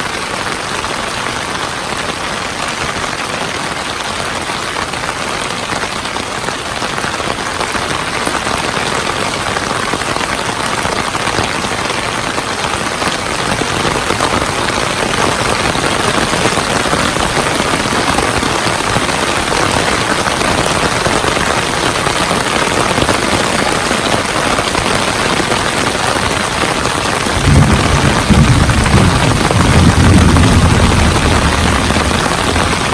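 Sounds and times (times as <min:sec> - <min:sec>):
heavy rain hitting surfaces: 0:00.0 - 0:32.9
low rumble: 0:27.4 - 0:32.9.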